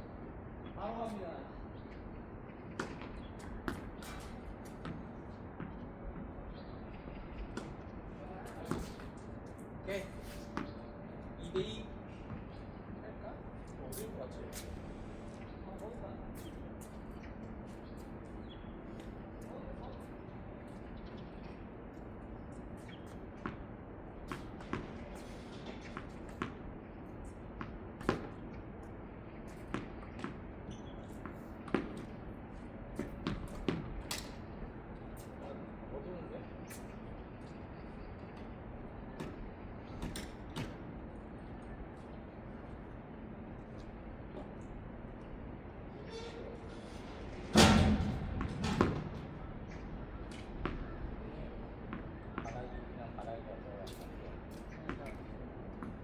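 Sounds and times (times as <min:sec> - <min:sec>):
steady background noise: 0:00.0 - 0:56.0
balls bouncing on hard court: 0:02.6 - 0:06.4, 0:08.5 - 0:09.2, 0:10.0 - 0:12.7, 0:22.9 - 0:26.6, 0:27.6 - 0:28.6, 0:29.5 - 0:32.2, 0:33.0 - 0:34.3, 0:47.6 - 0:52.7, 0:53.9 - 0:56.0.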